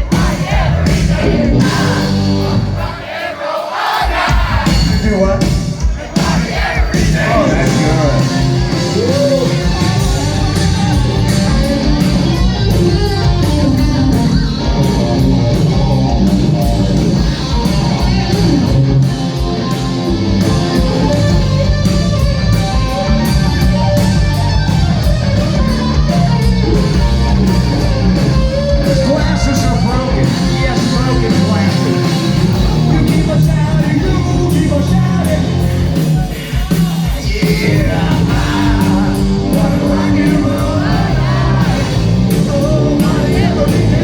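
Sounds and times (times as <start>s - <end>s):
live rock band playing: 0.0s - 3.2s, 3.9s - 44.0s
bent electric guitar notes: 7.2s - 36.1s.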